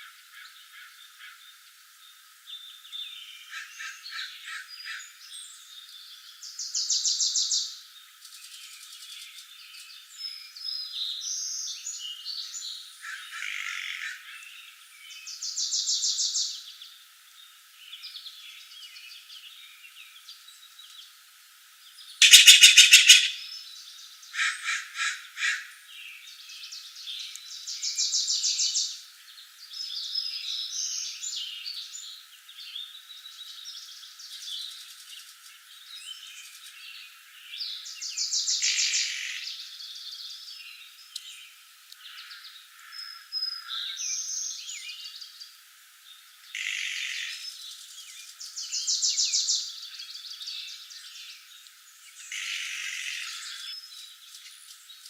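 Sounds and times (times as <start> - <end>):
birds singing and calling: 21.8 - 55.0
rapid high bird trill: 22.2 - 23.5.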